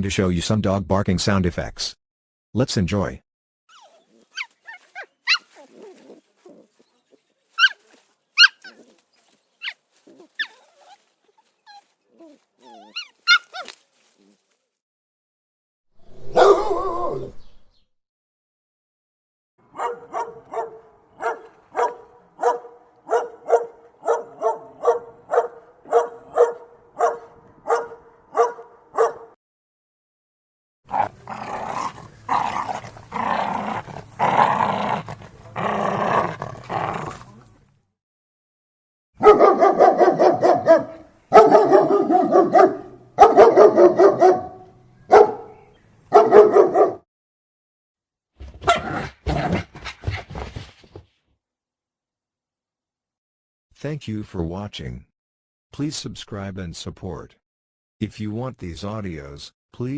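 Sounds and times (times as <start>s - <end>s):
dogs barking: 8.4s - 8.8s, 12.8s - 13.7s, 16.3s - 17.2s, 19.7s - 29.4s, 39.2s - 47.0s, 48.6s - 49.8s.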